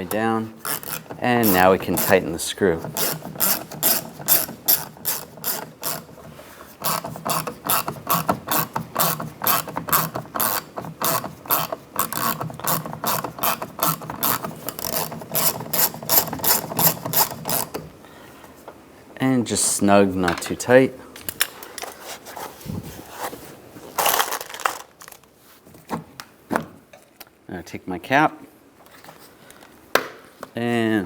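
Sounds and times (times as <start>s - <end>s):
hand ratchet clicking: 0.0s - 17.9s.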